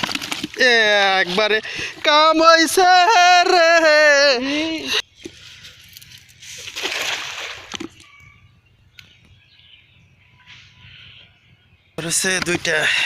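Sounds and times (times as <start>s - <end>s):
pond water splashing and sloshing: 5.2s - 8.1s.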